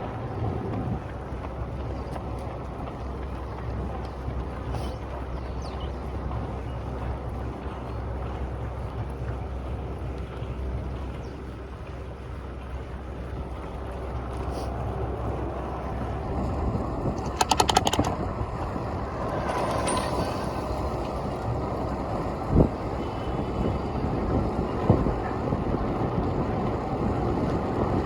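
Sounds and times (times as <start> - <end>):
city traffic rumble: 0.0 - 28.0
wind buffeting microphone: 0.0 - 28.0
rattle of clicks: 17.2 - 18.2.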